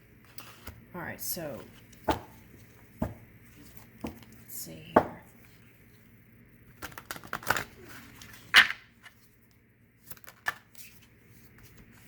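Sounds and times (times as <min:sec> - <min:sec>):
card rustle: 0:06.7 - 0:09.4, 0:10.0 - 0:12.0.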